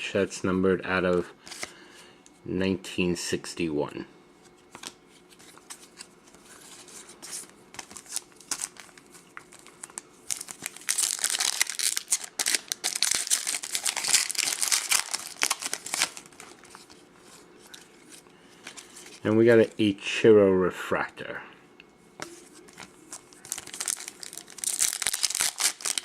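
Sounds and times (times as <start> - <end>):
foil wrapper crinkling: 7.8 - 19.8, 22.6 - 26.0.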